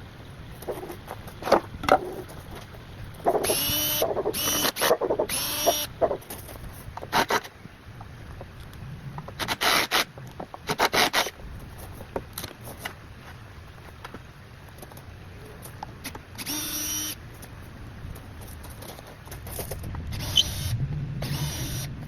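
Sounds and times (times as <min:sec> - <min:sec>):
power drill whirring: 0:03.4 - 0:05.9, 0:09.4 - 0:10.1, 0:16.4 - 0:17.2, 0:20.1 - 0:22.0.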